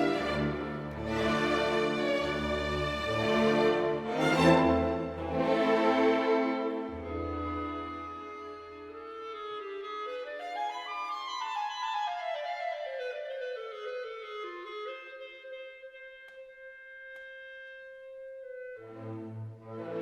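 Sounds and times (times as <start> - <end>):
fuller instrumental ensemble: 0.0 - 10.1, 18.5 - 20.0.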